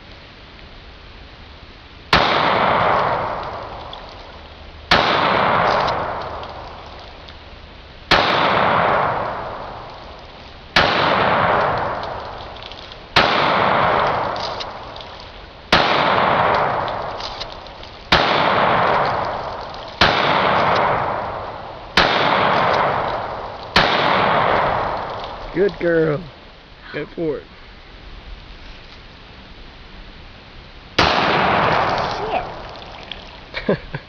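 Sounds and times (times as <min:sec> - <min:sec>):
pistol shots with echo: 0:02.1 - 0:03.7, 0:04.9 - 0:06.4, 0:08.1 - 0:09.6, 0:10.8 - 0:12.2, 0:13.2 - 0:14.8, 0:15.7 - 0:17.1, 0:18.1 - 0:19.4, 0:20.0 - 0:25.2, 0:31.0 - 0:32.6.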